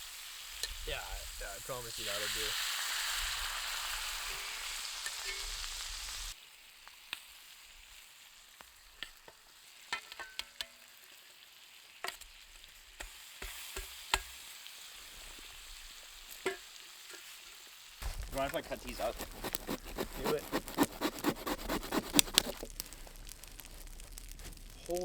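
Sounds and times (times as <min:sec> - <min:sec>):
meat sizzling in a frying pan: 0:00.0 - 0:19.0, 0:22.6 - 0:25.0
fat popping and crackling: 0:18.0 - 0:25.0.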